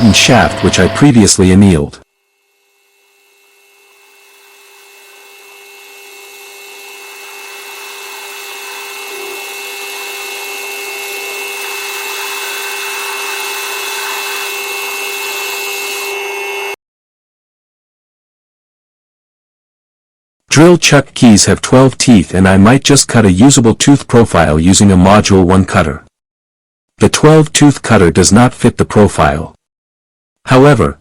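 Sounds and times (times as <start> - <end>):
metal lathe whining and cutting: 0.0 - 1.6, 2.2 - 16.8.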